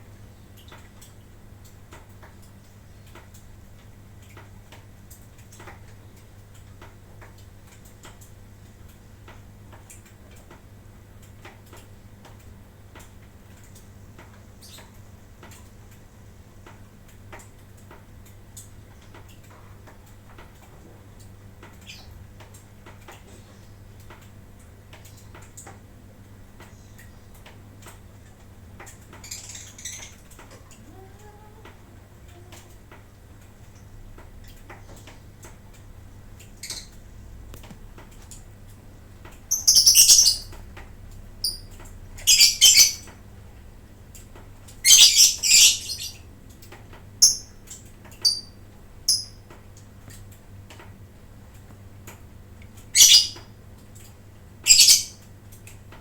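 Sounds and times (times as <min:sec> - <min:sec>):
light ticks and clicks: 0:00.5 - 0:42.3, 0:45.9 - 0:54.2
lovebird chirping: 0:39.5 - 0:40.5, 0:41.4 - 0:43.1, 0:44.8 - 0:46.2, 0:47.2 - 0:47.5, 0:48.2 - 0:49.4, 0:53.0 - 0:53.4, 0:54.7 - 0:55.2.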